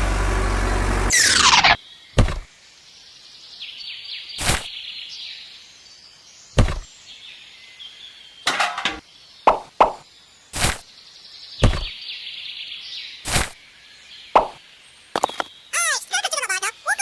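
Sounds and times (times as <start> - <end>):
sharp knocks: 11.6 - 12.0.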